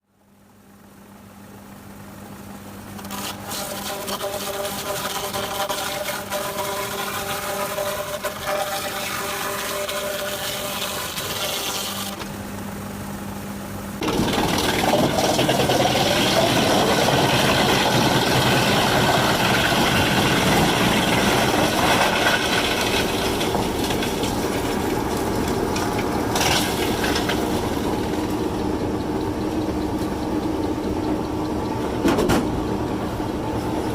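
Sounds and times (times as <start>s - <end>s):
sawmill engine running: 1.7s - 33.9s
band saw cutting log: 3.0s - 12.3s, 14.1s - 28.3s.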